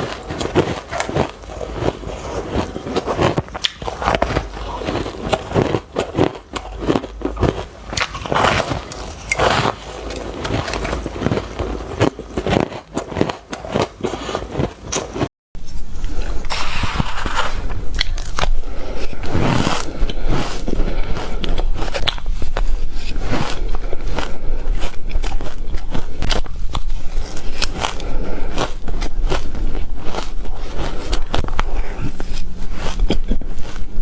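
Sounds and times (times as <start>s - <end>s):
ice crunching: 0.0s - 15.3s.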